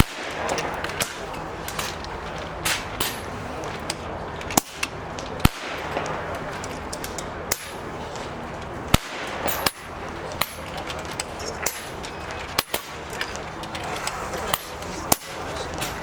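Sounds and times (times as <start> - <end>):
air rifle shots cracking: 0.0 - 3.8, 4.5 - 8.3, 8.9 - 10.8, 11.6 - 13.1, 14.4 - 16.0.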